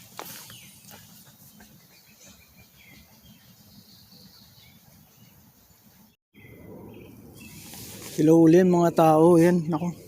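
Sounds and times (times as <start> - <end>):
steady low rumble: 6.4 - 10.0.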